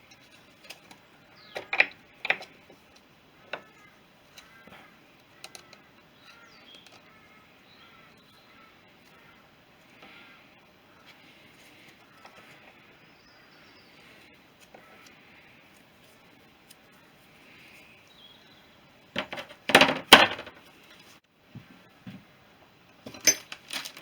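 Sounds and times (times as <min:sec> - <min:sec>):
metal-on-metal clinks: 0:23.1 - 0:23.6.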